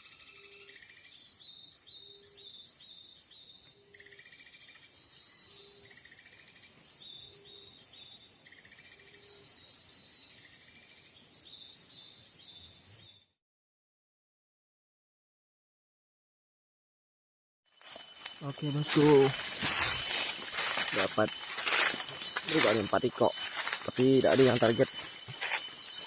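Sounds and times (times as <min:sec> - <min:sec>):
small birds chirping: 0:00.0 - 0:13.4, 0:17.7 - 0:26.0.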